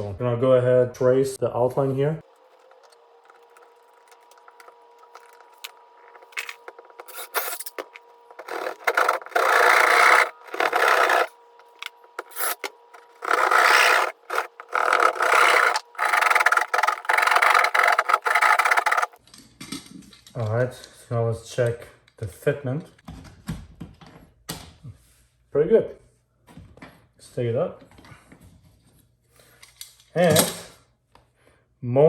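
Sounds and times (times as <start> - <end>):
scratches on drywall: 2.2 - 19.2
hand saw rasping through drywall: 2.5 - 19.2.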